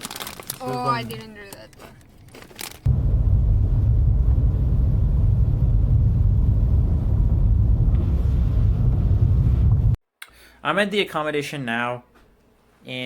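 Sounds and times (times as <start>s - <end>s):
car interior rumble: 2.9s - 10.0s.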